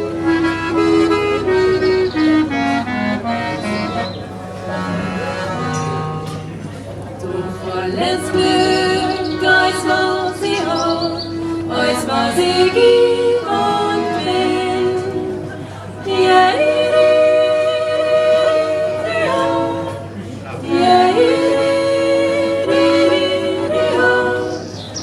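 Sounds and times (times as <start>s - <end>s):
vocal group singing a cappella: 7.2s - 25.0s.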